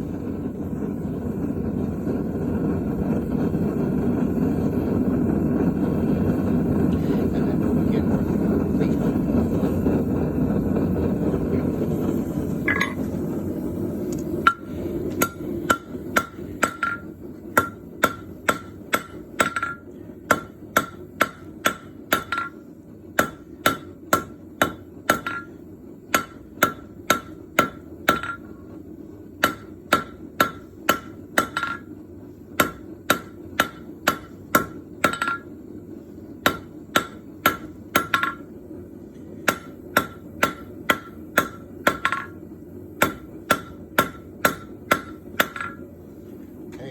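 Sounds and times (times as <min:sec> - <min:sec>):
hammer striking metal on anvil: 0:12.7 - 0:13.0, 0:14.4 - 0:22.6, 0:23.2 - 0:28.7, 0:29.4 - 0:32.0, 0:32.6 - 0:35.6, 0:36.4 - 0:38.5, 0:39.4 - 0:42.4, 0:43.0 - 0:45.9.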